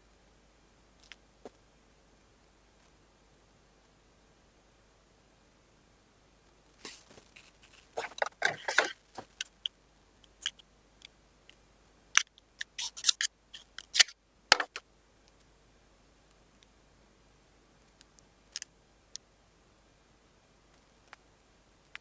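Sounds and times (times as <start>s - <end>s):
packaging scraping and rustling: 6.8s - 9.4s.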